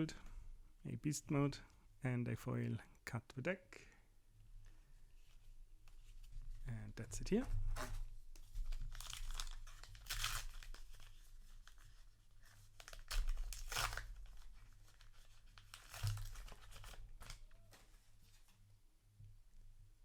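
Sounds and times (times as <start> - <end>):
paper wrapper tearing and crinkling: 7.8 - 17.8.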